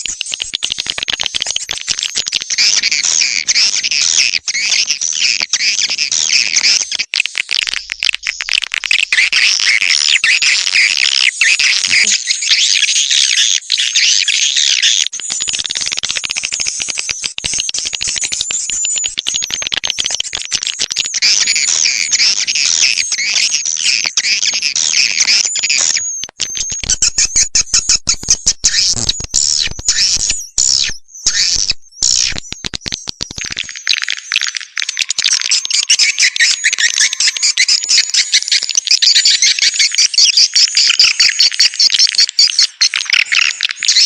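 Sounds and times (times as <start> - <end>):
swiftlets twittering: 15.1 - 43.5.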